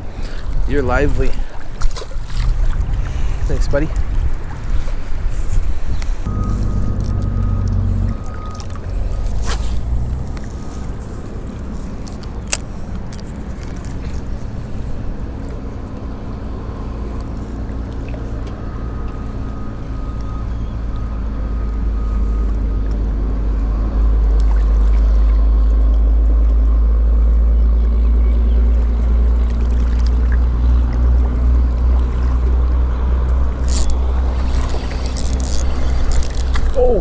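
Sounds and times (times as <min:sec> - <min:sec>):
motorboat engine rumbling: 0:00.0 - 0:37.0.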